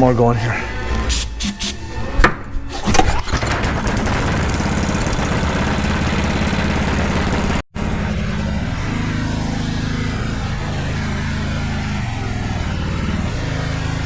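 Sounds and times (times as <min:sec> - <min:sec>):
engine starting knocks: 0:02.7 - 0:07.6
engine running steadily: 0:03.4 - 0:14.0.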